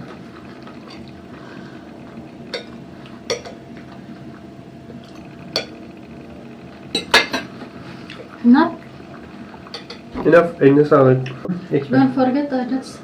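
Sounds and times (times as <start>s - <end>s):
low background hum: 0.0s - 13.0s
forks clinking against plates: 2.5s - 3.6s, 6.9s - 7.5s, 9.7s - 10.0s.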